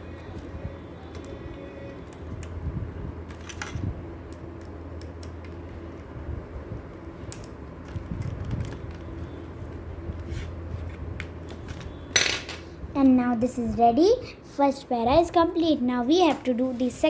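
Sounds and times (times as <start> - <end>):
steady low hum: 0.0 - 17.0
small metal parts clicking: 3.3 - 6.1, 6.9 - 9.7.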